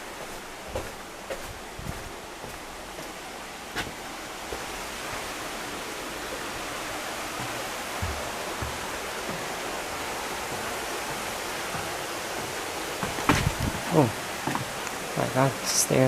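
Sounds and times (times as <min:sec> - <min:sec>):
running water rushing: 0:00.0 - 0:16.0
soft low thumps: 0:13.1 - 0:13.9.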